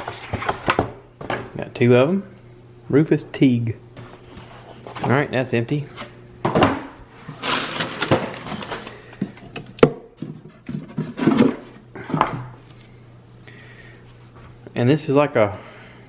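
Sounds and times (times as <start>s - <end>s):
packing material rustling: 7.4s - 8.9s.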